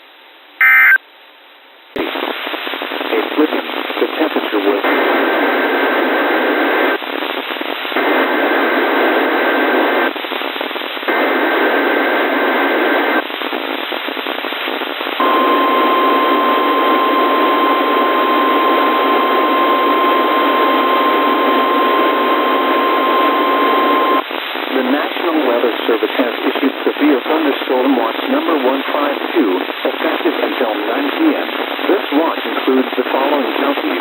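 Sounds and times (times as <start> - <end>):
two-tone digital squawks: 0.6 - 1.0
radio static: 2.0 - 34.0
steady warning alarm tone: 15.2 - 24.2.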